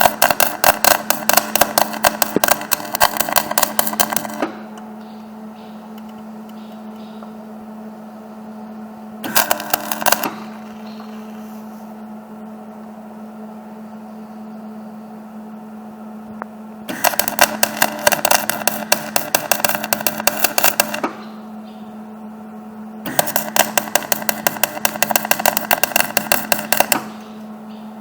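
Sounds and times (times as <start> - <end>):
welding arc crackle: 0.0 - 4.8, 9.2 - 11.5, 16.9 - 21.2, 23.1 - 27.4
steady hum: 0.0 - 28.0.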